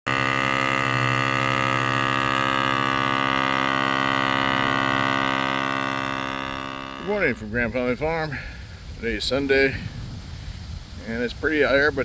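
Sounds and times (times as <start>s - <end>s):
held pulsing chord: 0.0s - 7.6s.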